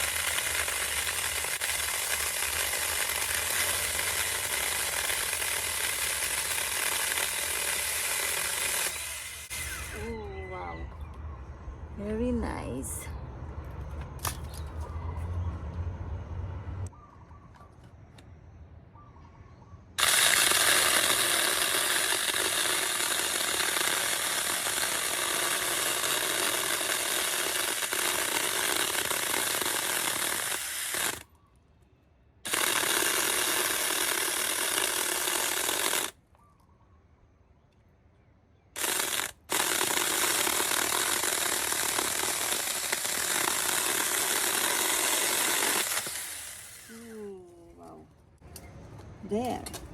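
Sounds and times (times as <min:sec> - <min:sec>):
electric chainsaw cutting branches: 0:00.0 - 0:10.1, 0:20.0 - 0:31.2, 0:32.5 - 0:36.2, 0:38.8 - 0:47.2.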